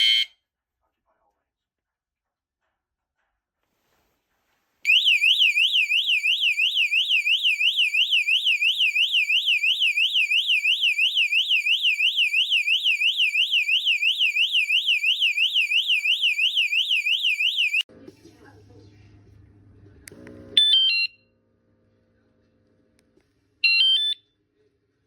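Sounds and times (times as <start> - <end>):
electronic alarm siren warbling: 0.0 - 0.3, 4.9 - 17.9.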